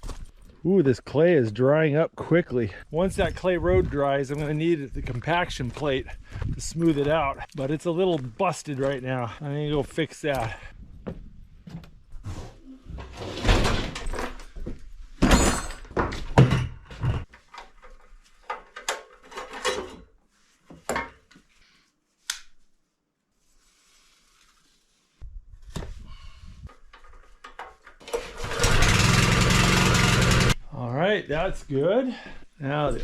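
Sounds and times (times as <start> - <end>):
small engine running loudly: 28.4 - 30.6.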